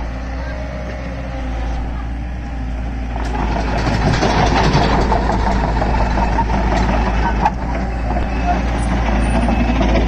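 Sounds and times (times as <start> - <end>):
excavator diesel engine rumbling: 0.0 - 10.0
rattling clatter: 3.2 - 10.0.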